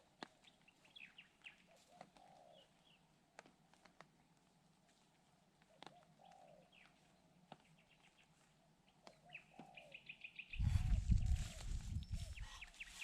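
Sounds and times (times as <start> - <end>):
low gusty rumble: 10.6 - 12.6
birds calling: 12.0 - 13.0.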